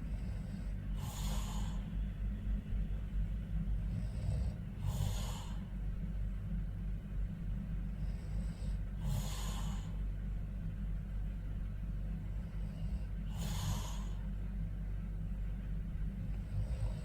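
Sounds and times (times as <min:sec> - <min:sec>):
steady low hum: 0:00.0 - 0:17.0
person snoring: 0:12.7 - 0:14.2, 0:16.4 - 0:17.0.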